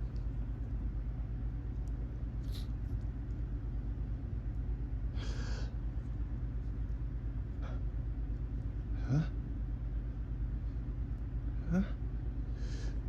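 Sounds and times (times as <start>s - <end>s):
steady low hum: 0.0s - 13.0s
person breathing and sniffing: 5.1s - 5.8s.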